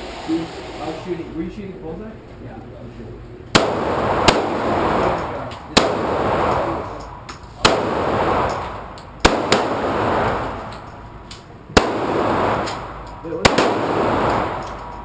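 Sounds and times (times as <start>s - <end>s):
pistol shots with echo: 3.5s - 15.0s.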